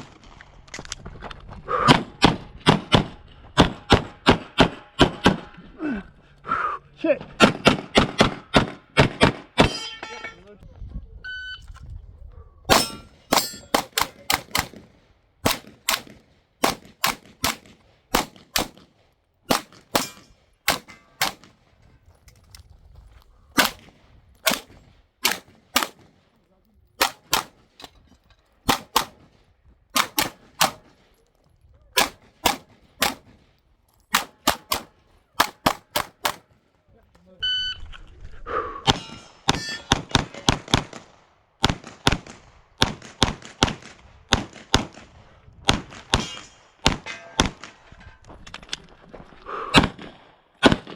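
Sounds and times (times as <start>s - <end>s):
pistol shots: 12.7s - 21.6s, 23.6s - 26.2s, 27.0s - 27.9s, 28.6s - 31.0s, 32.0s - 33.4s, 34.1s - 36.6s, 49.8s - 50.9s.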